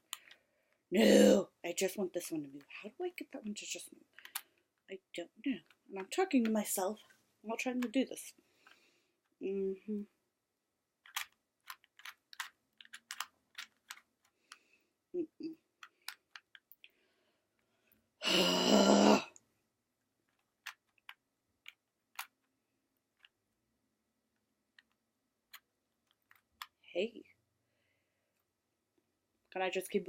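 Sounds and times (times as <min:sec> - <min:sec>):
rubik's cube clicking: 0:04.2 - 0:04.6, 0:11.0 - 0:14.6, 0:15.7 - 0:16.9, 0:20.2 - 0:23.4, 0:24.7 - 0:26.8.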